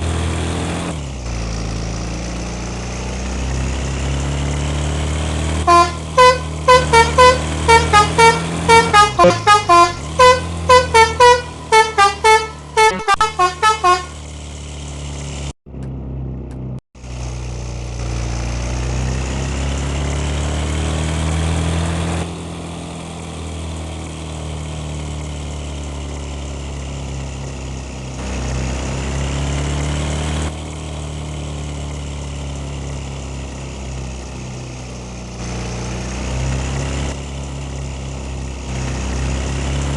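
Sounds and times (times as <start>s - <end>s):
bus engine running: 0.0s - 39.9s
bus multi-tone horn tune: 5.6s - 14.2s.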